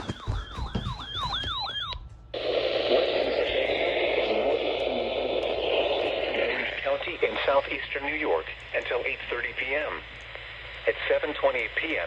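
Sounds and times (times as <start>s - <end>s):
siren yelping: 0.0s - 6.6s
radio static hiss: 2.4s - 12.0s.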